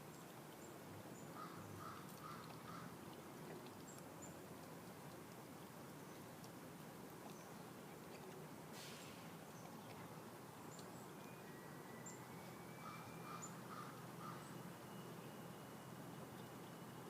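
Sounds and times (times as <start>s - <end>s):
faint bird calls: 1.2s - 3.0s, 11.5s - 14.6s
puppy chewing crunchily: 1.8s - 8.7s.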